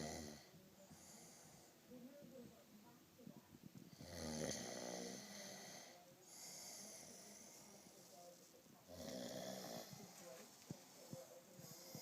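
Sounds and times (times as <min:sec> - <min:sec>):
man snoring: 0:00.0 - 0:00.5, 0:04.0 - 0:06.6, 0:08.9 - 0:10.0.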